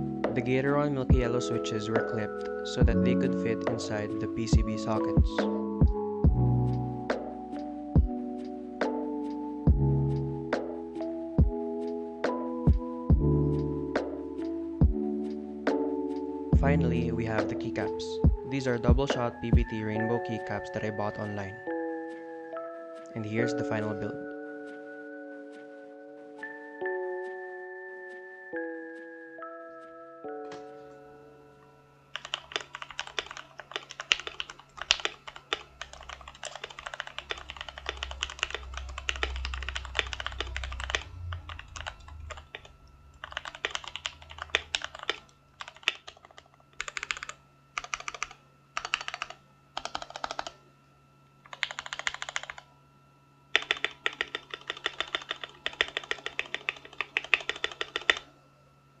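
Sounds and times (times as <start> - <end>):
mechanical keyboard typing: 32.2 - 50.6, 51.5 - 52.7, 53.6 - 58.3.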